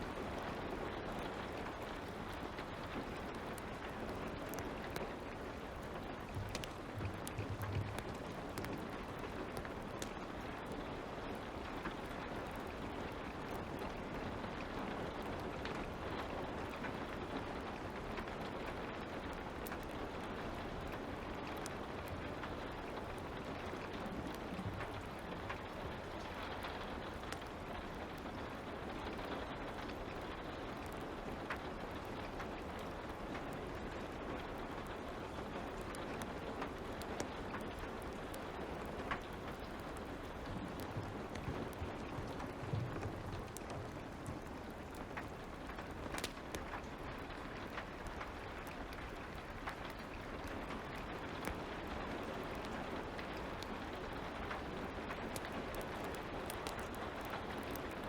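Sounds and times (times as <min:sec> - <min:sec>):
light rain falling: 0:00.0 - 0:58.0
wood fire crackling: 0:00.0 - 0:58.0.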